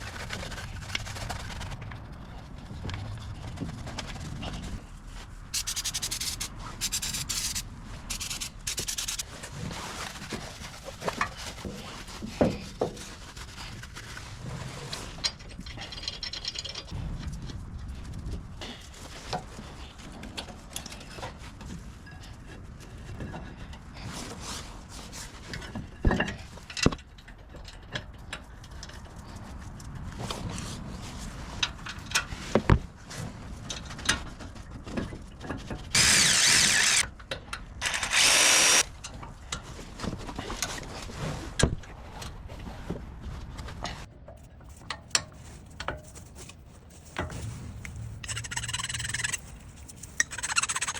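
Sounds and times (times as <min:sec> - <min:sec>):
rubbing and scraping: 0:00.0 - 0:17.0, 0:35.9 - 0:37.0, 0:37.8 - 0:38.8, 0:42.6 - 0:50.9.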